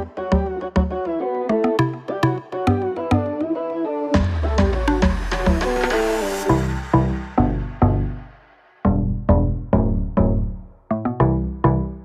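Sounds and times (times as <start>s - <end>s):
steady beat: 4.2s - 8.4s.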